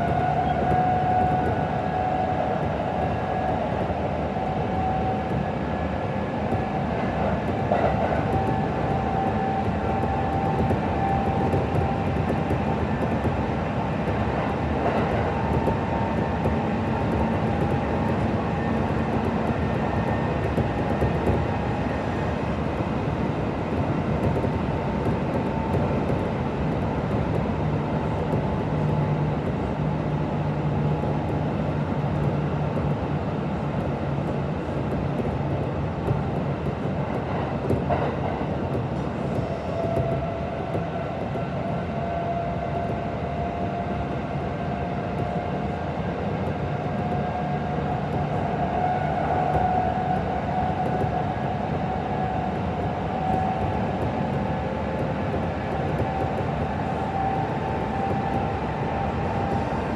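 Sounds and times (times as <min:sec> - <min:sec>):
train wheel and rail noise: 0:00.0 - 0:59.9.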